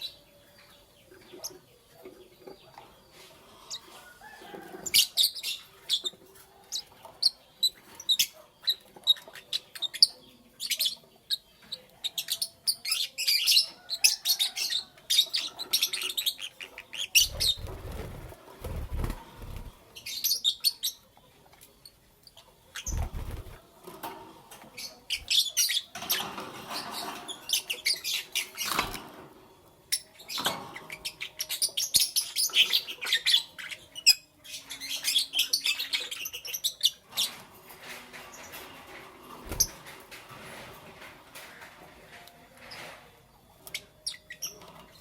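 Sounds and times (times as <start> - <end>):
birds chirping: 14.4 - 21.3, 22.2 - 23.7.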